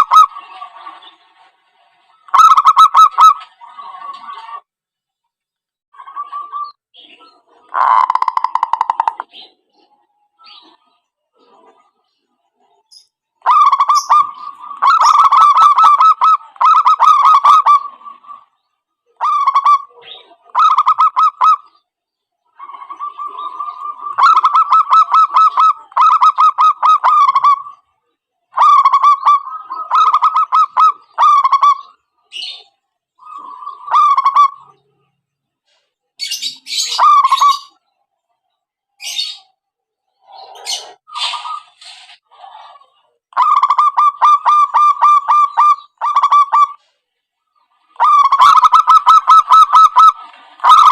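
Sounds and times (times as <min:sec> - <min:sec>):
doves cooing: 0:00.0 - 0:01.2, 0:02.2 - 0:04.6, 0:06.0 - 0:21.8, 0:22.4 - 0:27.8, 0:28.5 - 0:34.9, 0:36.2 - 0:37.8, 0:40.2 - 0:46.8, 0:47.7 - 0:50.9
high thin bird calls: 0:02.1 - 0:04.7, 0:07.6 - 0:09.6, 0:12.9 - 0:18.6, 0:19.2 - 0:27.8, 0:40.2 - 0:46.8, 0:47.5 - 0:50.9.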